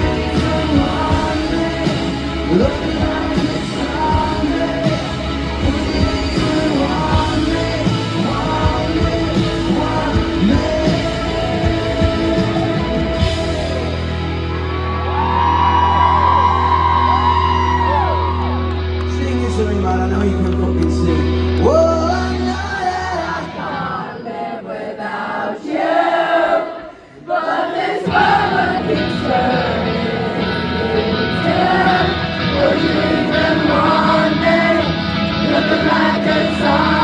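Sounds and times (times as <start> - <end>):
steady drums: 0.0 - 18.2, 27.8 - 37.0
live rock band playing: 0.0 - 23.1, 28.1 - 37.0.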